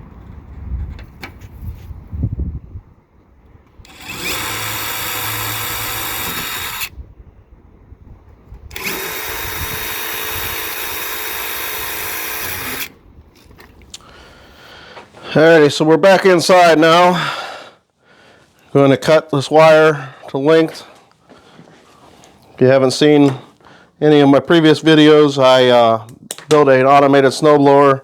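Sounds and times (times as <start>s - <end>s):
power drill running: 3.8s - 6.9s, 8.7s - 13.0s.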